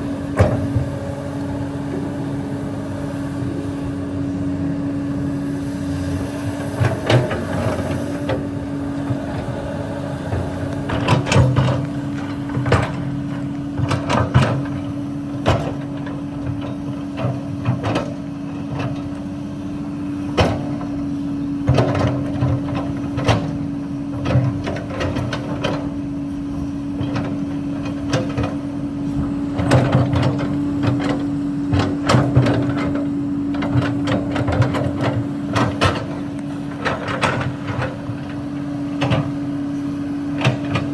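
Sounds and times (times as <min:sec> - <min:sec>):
excavator engine droning: 0:00.0 - 0:40.9.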